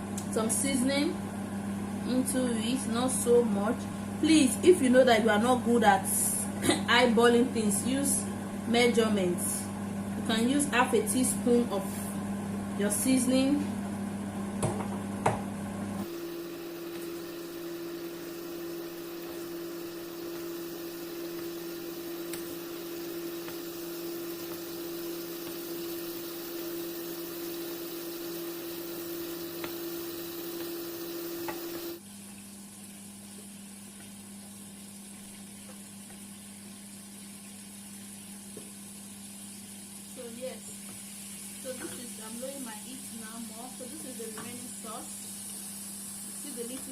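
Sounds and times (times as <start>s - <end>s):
chicken frying in oil: 31.4s - 46.9s.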